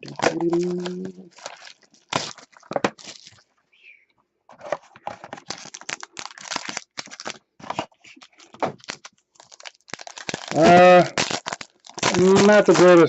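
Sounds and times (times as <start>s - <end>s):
packaging tearing and crinkling: 0.0s - 3.4s, 5.2s - 13.0s
cards handled: 12.1s - 13.0s.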